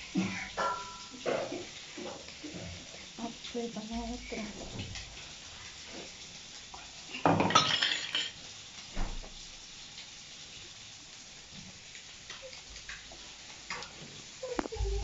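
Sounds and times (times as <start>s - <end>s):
metal utensils and dishes clattering: 0.2s - 2.8s, 7.1s - 8.4s.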